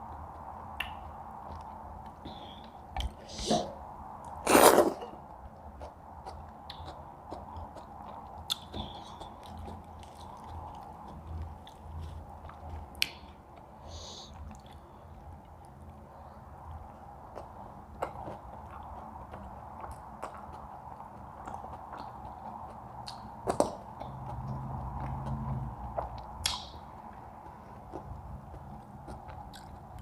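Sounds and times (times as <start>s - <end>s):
chewing and biting: 4.3s - 13.7s, 16.6s - 30.0s.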